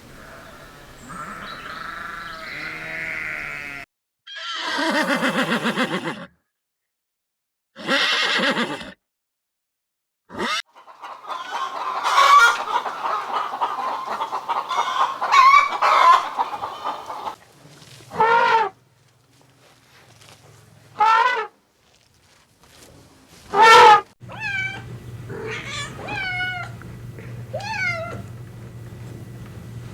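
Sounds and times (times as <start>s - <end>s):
rough animal call: 0.0s - 3.8s, 11.0s - 17.4s, 18.0s - 18.8s
chickens clucking: 10.7s - 17.4s
cat meowing: 24.3s - 26.8s, 27.5s - 28.3s.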